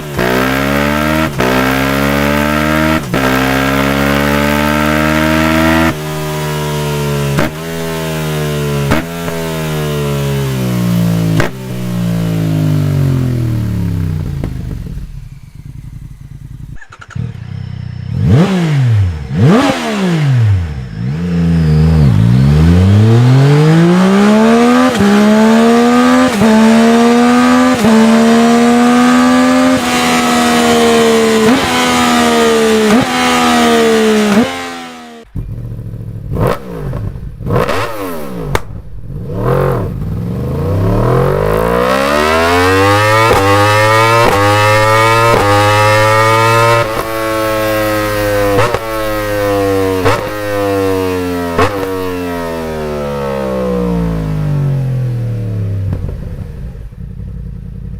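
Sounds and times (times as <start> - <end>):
motorcycle engine revving: 0.0 - 57.9.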